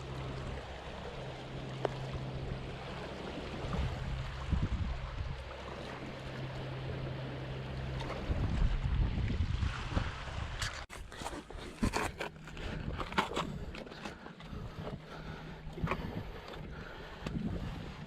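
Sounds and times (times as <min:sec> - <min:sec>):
steady low hum: 0:00.0 - 0:09.3, 0:11.0 - 0:18.0
surf washing against rocks: 0:00.0 - 0:10.9.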